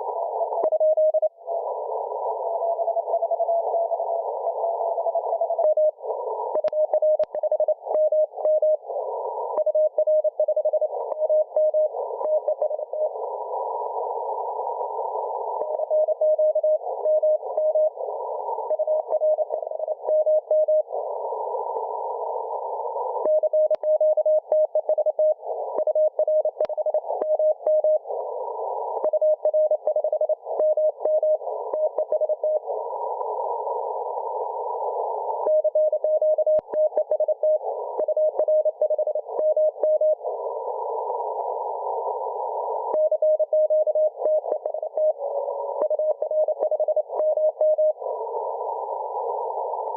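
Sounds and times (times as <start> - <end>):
static crackles: 1.5 - 49.9
radio hiss: 11.7 - 24.1, 24.8 - 49.9.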